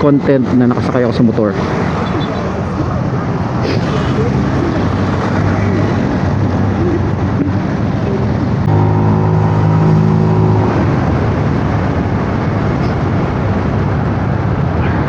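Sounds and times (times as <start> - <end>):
scooter engine and road noise: 0.0 - 15.0
wind on microphone: 1.5 - 15.0
steady low tone: 7.4 - 13.6.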